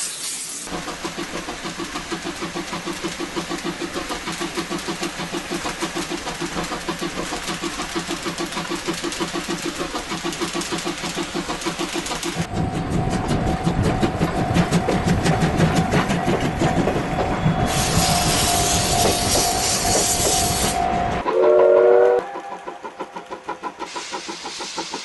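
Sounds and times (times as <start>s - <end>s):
hiss of steam: 0.0s - 12.5s, 17.7s - 20.8s, 23.7s - 25.0s
steam locomotive chuffing: 0.6s - 25.0s.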